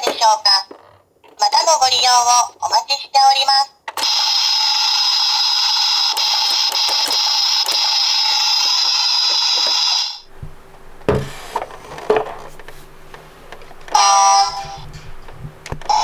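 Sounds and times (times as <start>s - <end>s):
toy electronic sound: 4.0s - 10.2s, 13.9s - 14.8s
plastic toy handling clicks: 5.8s - 9.9s.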